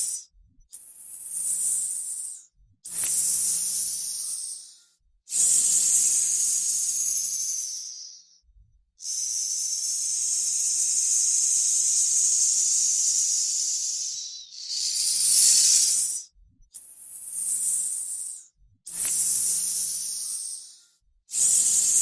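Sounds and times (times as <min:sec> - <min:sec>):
snake hissing: 0:05.4 - 0:08.3, 0:09.0 - 0:16.2.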